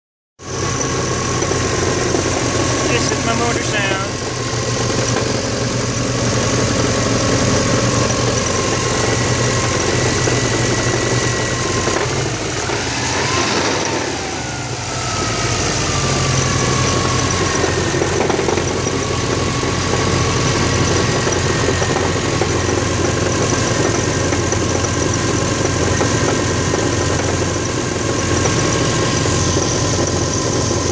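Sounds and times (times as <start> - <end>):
car engine idling: 0.4 - 30.9
grinding noise from engine: 0.5 - 30.9
falling tones: 12.2 - 16.7.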